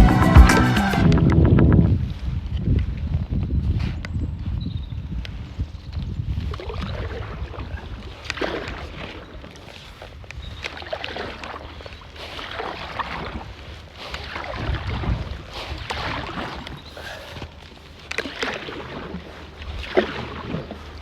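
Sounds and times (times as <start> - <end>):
wind rumble on microphone: 0.0 - 17.6
paddle splashing in water: 5.3 - 21.0.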